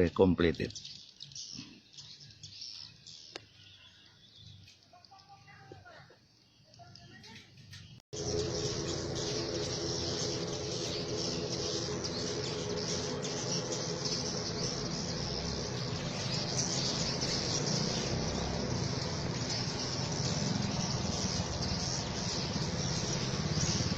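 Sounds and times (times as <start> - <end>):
swiftlets chirping: 8.2 - 23.9.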